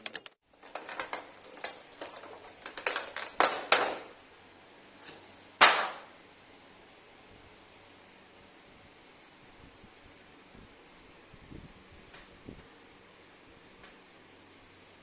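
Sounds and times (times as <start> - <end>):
sharp clicks and knocks: 0.0 - 4.2.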